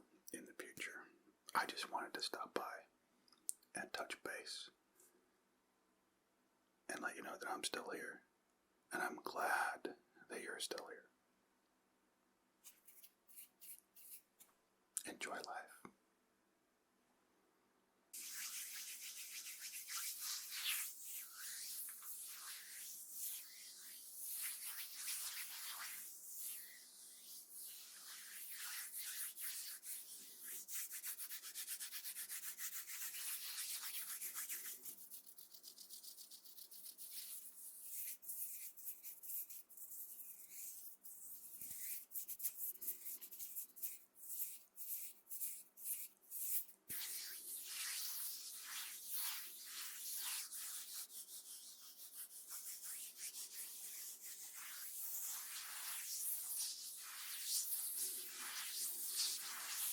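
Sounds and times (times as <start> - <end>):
brush scratching on microphone: 12.6 - 14.5, 18.2 - 59.9.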